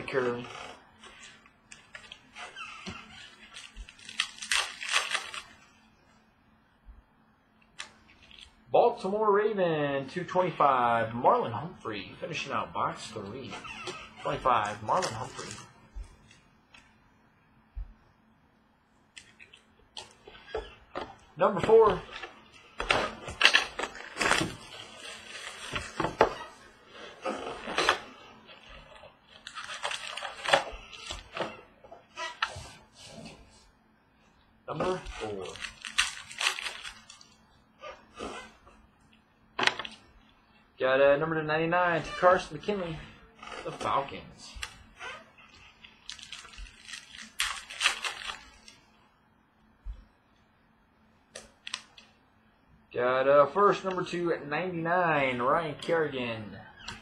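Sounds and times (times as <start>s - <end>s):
packaging tearing and crinkling: 0.3s - 5.7s, 13.6s - 16.4s, 21.6s - 31.6s, 34.8s - 37.4s, 42.1s - 48.9s, 51.6s - 52.1s
trading cards rustling: 34.8s - 37.4s, 46.0s - 48.8s.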